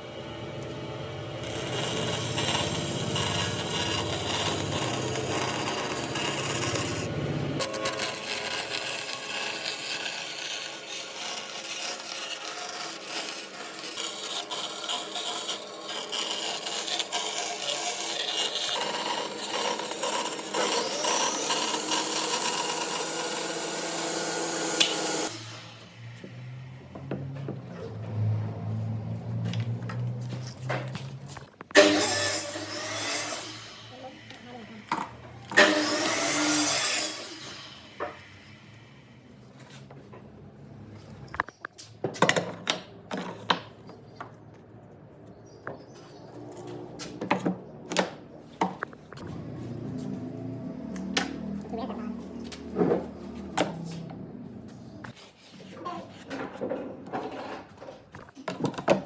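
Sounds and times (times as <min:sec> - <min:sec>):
tool scraping wood: 0:01.4 - 0:26.4, 0:29.3 - 0:33.8, 0:35.4 - 0:37.6.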